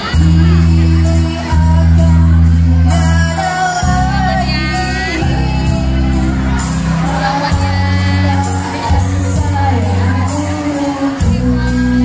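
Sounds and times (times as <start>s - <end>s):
person singing: 0.0s - 12.0s
sustained bass notes: 0.0s - 12.0s.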